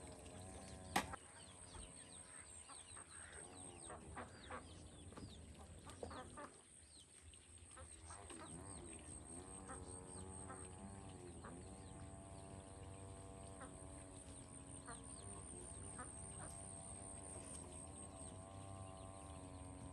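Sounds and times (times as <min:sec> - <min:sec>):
poultry calling: 0:07.7 - 0:19.3.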